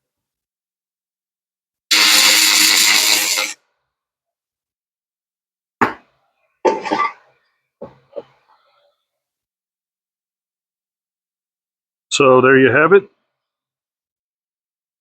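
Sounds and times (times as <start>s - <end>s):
laser hissing buzz: 1.9s - 3.6s.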